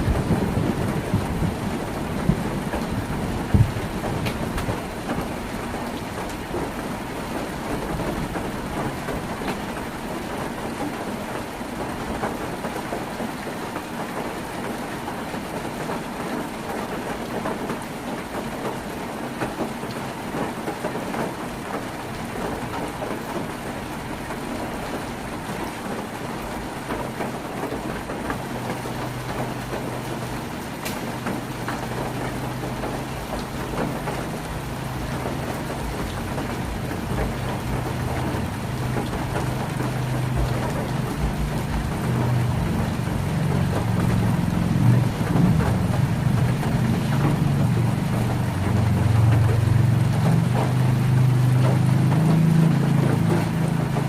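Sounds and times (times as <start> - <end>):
heavy rain on a tin roof: 0.0 - 54.0.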